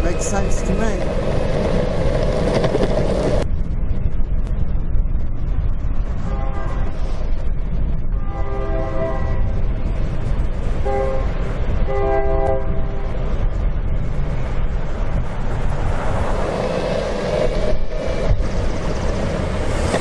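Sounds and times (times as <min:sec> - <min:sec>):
low rumble: 0:00.0 - 0:20.0
rushing noise: 0:00.0 - 0:20.0
locomotive air horn blasts: 0:06.3 - 0:06.8, 0:08.2 - 0:09.5, 0:10.8 - 0:11.3, 0:11.9 - 0:13.0.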